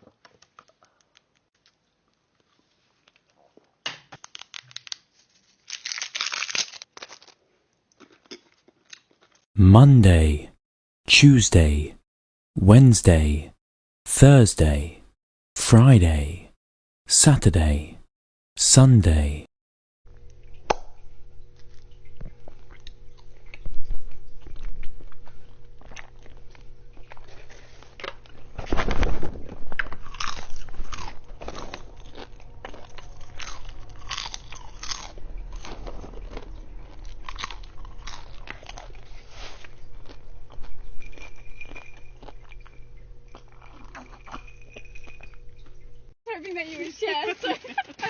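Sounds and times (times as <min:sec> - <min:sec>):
person chewing crunchy food: 0:05.6 - 0:09.5, 0:21.5 - 0:28.6, 0:29.5 - 0:45.8.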